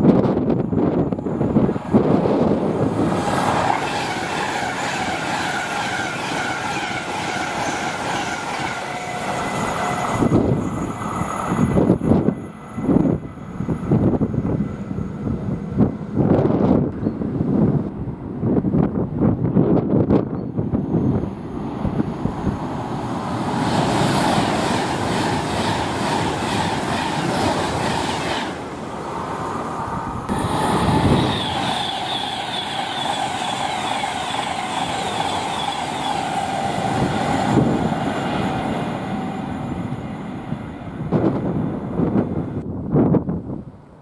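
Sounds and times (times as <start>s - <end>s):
train passing at speed: 0.0s - 44.0s
ringing tone from train wheels: 30.3s - 37.6s.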